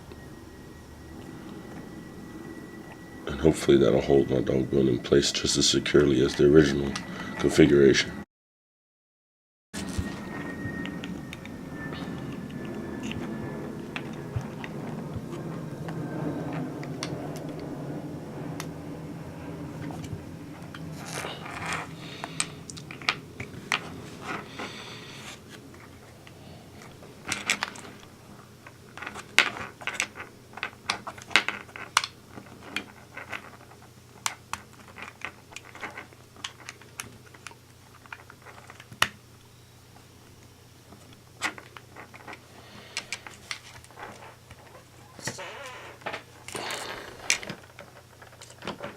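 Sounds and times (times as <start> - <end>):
small parts clicking and scraping: 19.8 - 39.2, 40.9 - 48.9.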